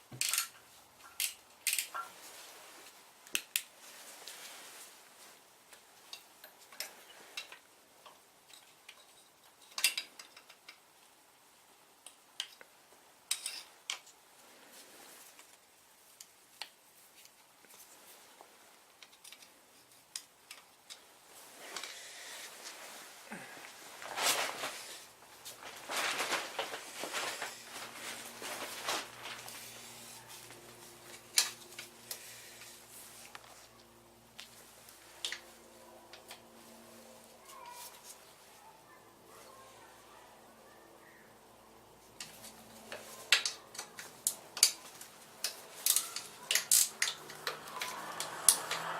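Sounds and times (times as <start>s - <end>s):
rustling and handling noises: 0.0s - 11.2s, 11.9s - 40.4s, 41.9s - 48.9s
faint steady hum: 0.0s - 48.9s
metallic clicks of hand tools: 45.4s - 48.9s.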